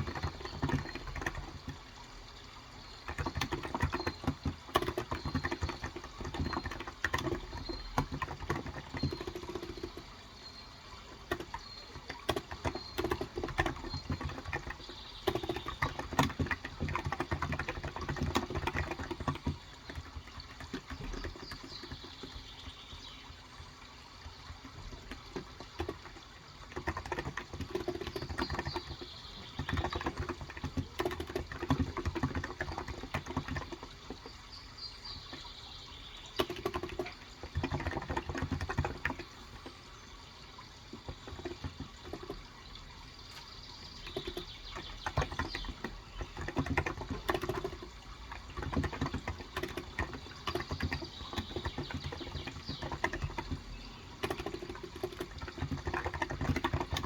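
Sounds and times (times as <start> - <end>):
running water: 0.0 - 57.0
keyboard typing: 3.0 - 10.1, 11.1 - 22.4, 24.5 - 34.3, 36.4 - 39.7, 43.3 - 57.0.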